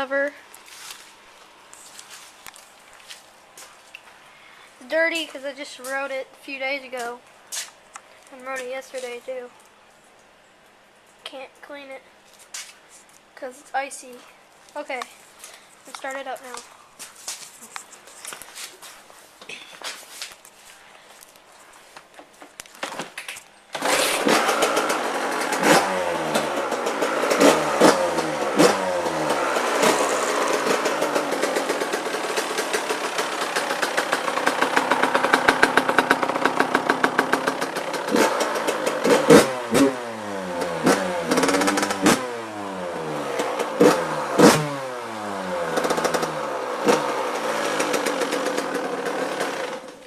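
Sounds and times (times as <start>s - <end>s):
dirt bike engine revving: 23.7s - 50.0s.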